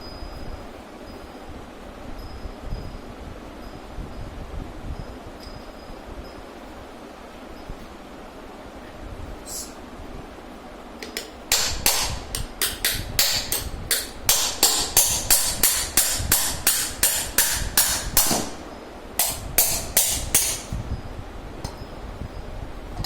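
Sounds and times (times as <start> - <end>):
hammer tapping on bearing: 11.0 - 18.6, 19.2 - 20.7.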